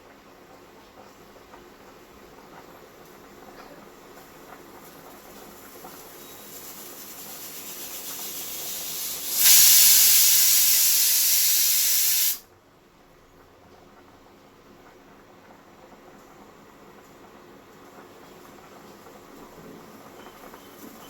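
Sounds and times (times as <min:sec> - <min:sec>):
pressure cooker venting steam: 0:04.2 - 0:12.5.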